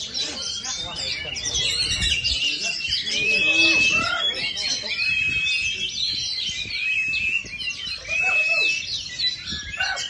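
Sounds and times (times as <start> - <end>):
bird singing whistles and trills: 0.0 - 10.0.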